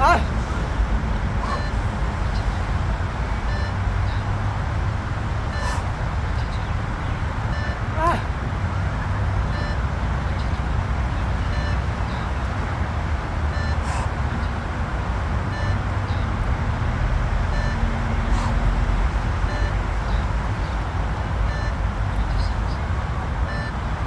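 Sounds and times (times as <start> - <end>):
low background rumble: 0.0 - 24.0
short electronic beeps: 1.4 - 2.5, 3.5 - 4.3, 5.5 - 8.2, 9.5 - 10.7, 11.3 - 12.3, 13.5 - 14.0, 15.5 - 15.8, 17.5 - 18.6, 19.4 - 20.2, 21.4 - 22.6, 23.4 - 23.8.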